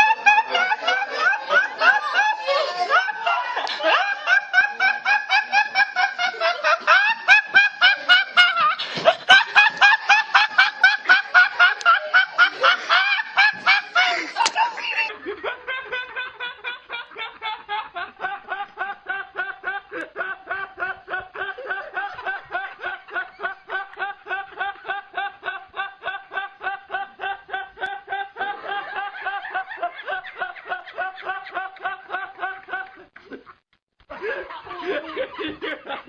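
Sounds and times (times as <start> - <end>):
high-pitched rapid laughing: 0.0 - 26.6.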